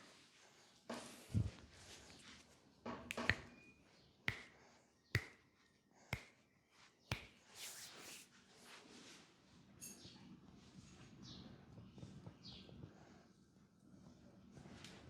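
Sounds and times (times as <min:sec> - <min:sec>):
hand tapping on body: 0:03.1 - 0:03.5, 0:04.3 - 0:04.5, 0:05.2 - 0:05.4, 0:07.1 - 0:07.4.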